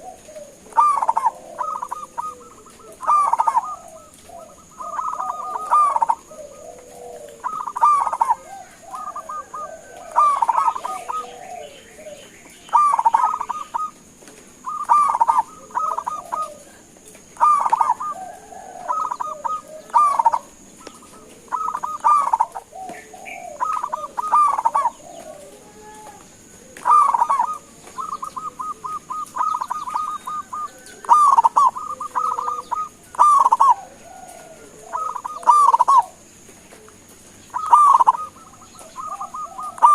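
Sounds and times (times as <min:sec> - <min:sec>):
dove stuttering cooing: 0:00.0 - 0:39.9
soft low coos: 0:14.7 - 0:39.9.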